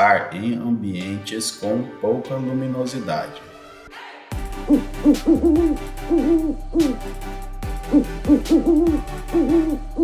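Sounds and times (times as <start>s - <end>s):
owl hooting: 4.6s - 7.1s, 7.8s - 10.0s.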